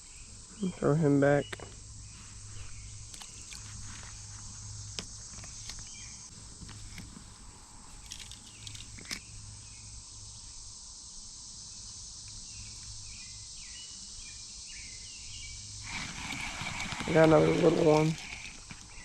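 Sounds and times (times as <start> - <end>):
birds chirping: 0.0 - 7.0, 8.2 - 9.9, 12.4 - 19.0
insect hiss: 0.0 - 19.0.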